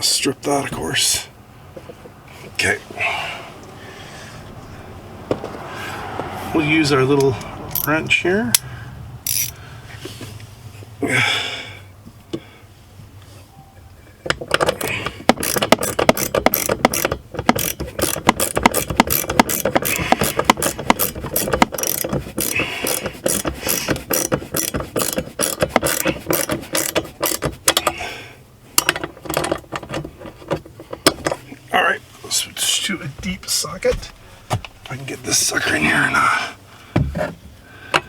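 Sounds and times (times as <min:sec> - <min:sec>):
ratchet wrench clicking: 0:07.2 - 0:09.6, 0:14.5 - 0:27.9.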